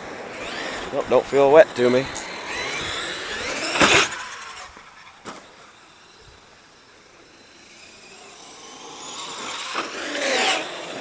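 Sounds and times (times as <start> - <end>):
toy truck electric motor whine: 0.0 - 1.0, 1.8 - 11.0.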